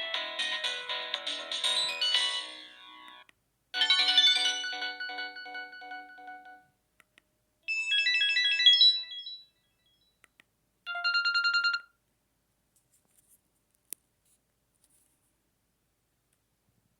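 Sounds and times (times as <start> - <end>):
phone ringtone melody: 0.0 - 3.2, 3.8 - 6.7, 7.7 - 9.6, 10.9 - 11.9.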